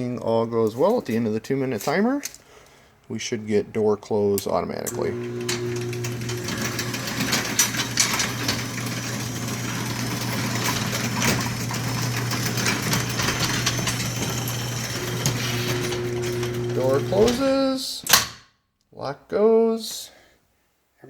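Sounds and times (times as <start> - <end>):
drive rattling and clicking: 4.9 - 17.5
garage door opener motor: 4.9 - 17.6.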